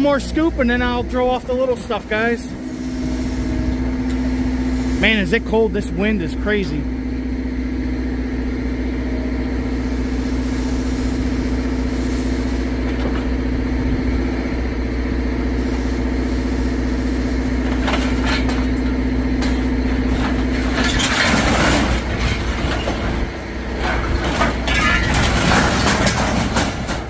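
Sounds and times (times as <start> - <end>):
heavy machinery engine running: 0.0 - 27.0
scrap metal clanks and scrapes: 19.4 - 23.2, 23.8 - 27.0.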